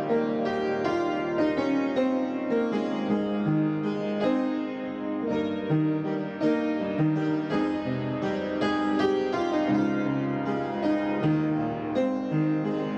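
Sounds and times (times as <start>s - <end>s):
harpsichord-like keyboard melody: 0.0s - 12.9s.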